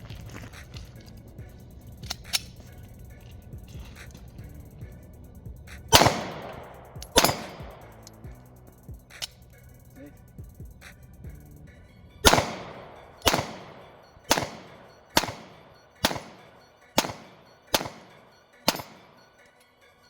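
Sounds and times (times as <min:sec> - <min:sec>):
pistol shots echoing: 0:05.7 - 0:08.2, 0:12.2 - 0:19.4.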